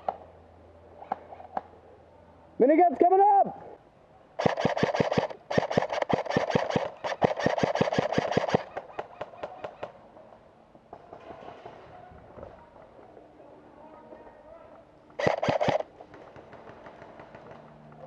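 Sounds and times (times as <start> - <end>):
airsoft gun bursts: 4.4 - 8.8, 15.2 - 15.9
airsoft gun single shots: 4.4 - 8.8, 15.2 - 15.9.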